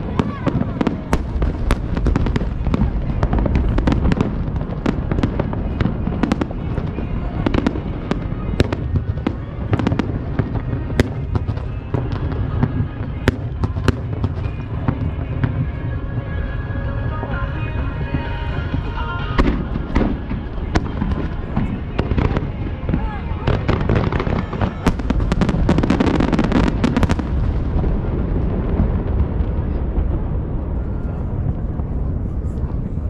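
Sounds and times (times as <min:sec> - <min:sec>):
continuous low rumble: 0:00.0 - 0:33.0
fireworks bangs and crackles: 0:00.0 - 0:33.0.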